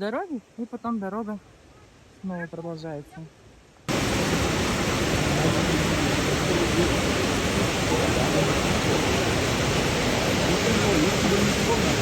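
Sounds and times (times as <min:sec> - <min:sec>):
waterfall: 0:00.0 - 0:12.0.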